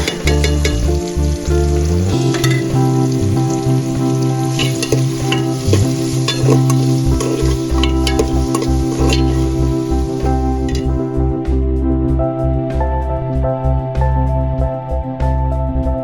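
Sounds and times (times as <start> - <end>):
food sizzling in a pan: 0.0 - 11.2
background music with held notes: 0.0 - 16.0
spoon scraping a pan: 4.4 - 9.6.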